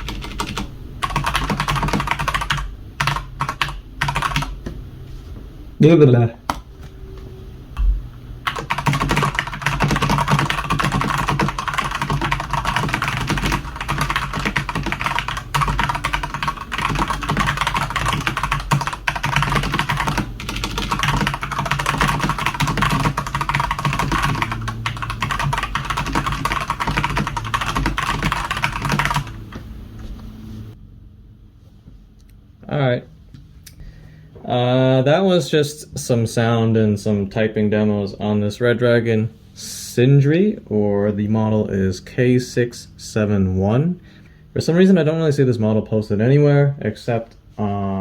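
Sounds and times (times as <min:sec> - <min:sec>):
mechanical keyboard typing: 0:00.0 - 0:04.6, 0:08.4 - 0:29.6.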